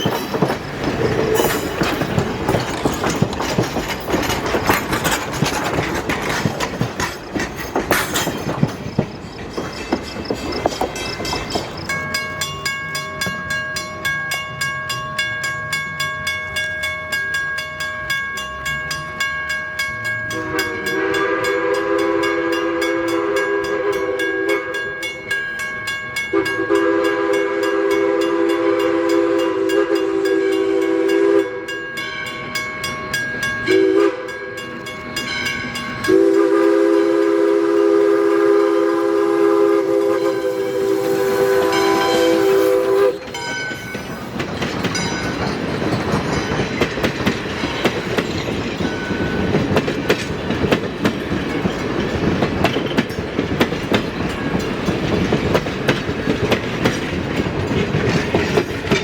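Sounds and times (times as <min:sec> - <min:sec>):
steam locomotive exhaust beat: 0:00.0 - 0:59.0
steam whistle blasts: 0:20.3 - 0:25.2, 0:26.3 - 0:31.8, 0:33.7 - 0:34.5, 0:36.0 - 0:43.3.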